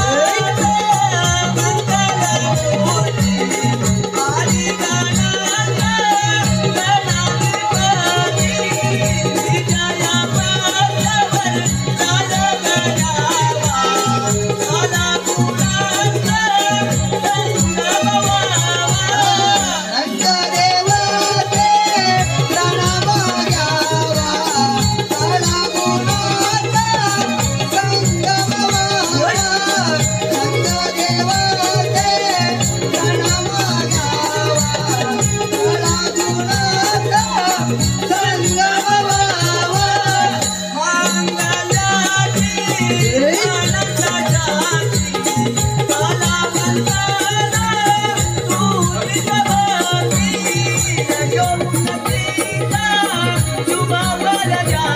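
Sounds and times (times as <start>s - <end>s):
hand drum beat: 0.0s - 54.9s
jingling percussion: 0.0s - 54.9s.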